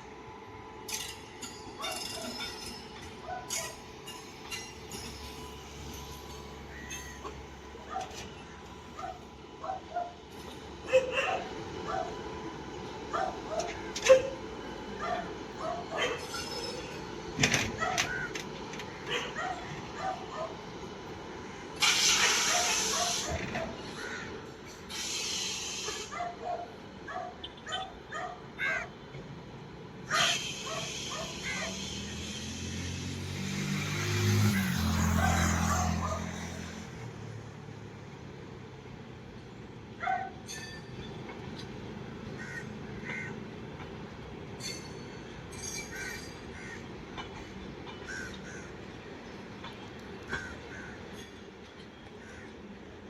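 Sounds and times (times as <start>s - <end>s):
passing train rumble: 0.0s - 53.0s
crows cawing: 42.3s - 43.4s, 45.9s - 46.9s, 48.0s - 48.8s.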